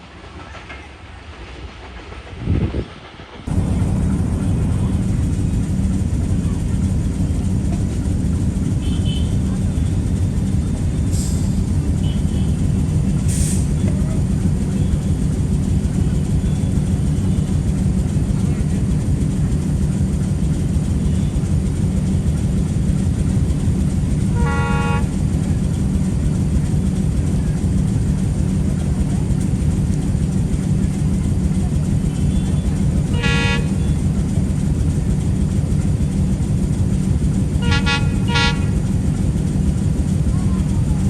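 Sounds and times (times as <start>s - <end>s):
train rumbling: 0.0s - 41.0s
train horn blasts: 8.8s - 9.6s, 24.2s - 25.3s, 33.0s - 34.0s, 37.6s - 38.9s.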